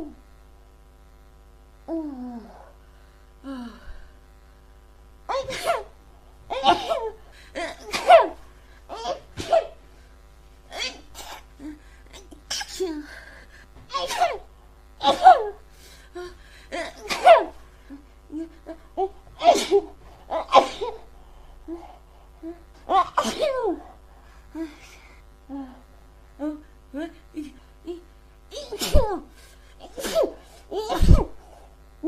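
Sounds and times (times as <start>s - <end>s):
woman sneezing: 5.3s - 9.8s, 10.7s - 11.5s, 12.2s - 13.0s, 13.9s - 15.6s, 16.7s - 17.6s, 19.4s - 21.0s, 22.9s - 23.9s, 28.5s - 31.4s.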